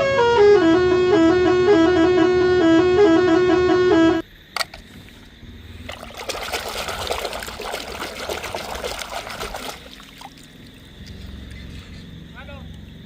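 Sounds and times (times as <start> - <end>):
water pouring and splashing: 4.6 - 11.7.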